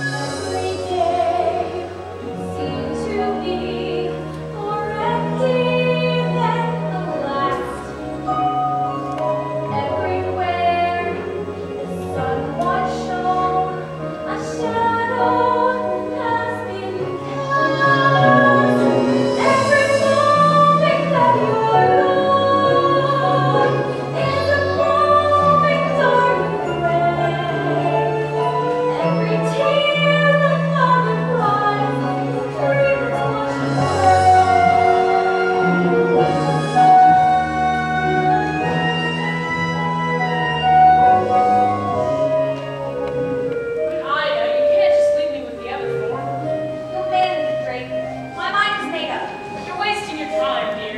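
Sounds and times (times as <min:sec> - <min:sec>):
instrumental accompaniment: 0:00.0 - 0:50.9
woman singing ballad: 0:12.0 - 0:35.6.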